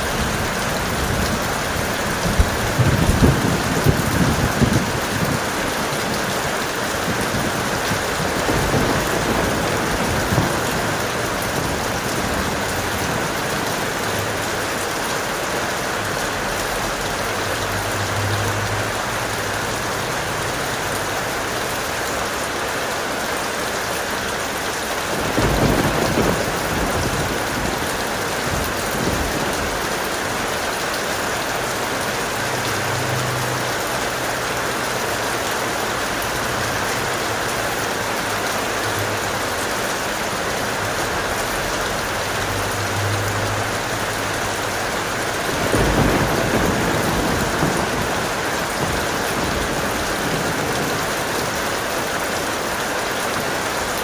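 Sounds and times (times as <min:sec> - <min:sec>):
thunder clap and rumble: 0:00.0 - 0:17.0, 0:25.0 - 0:32.9, 0:40.7 - 0:52.4
heavy rain: 0:00.0 - 0:54.0.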